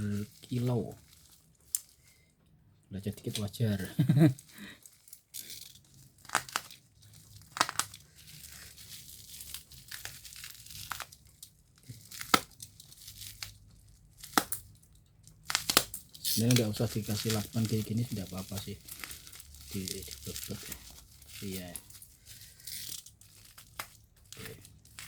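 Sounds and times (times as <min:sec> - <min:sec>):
plastic wrapping crinkling: 0:00.0 - 0:02.3, 0:03.0 - 0:25.0
packing tape ripping: 0:05.4 - 0:14.7, 0:15.4 - 0:25.0.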